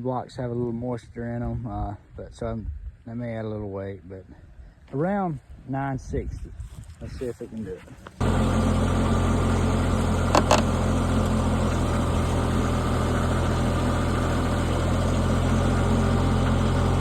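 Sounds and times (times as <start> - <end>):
diesel engine running: 8.2 - 17.0.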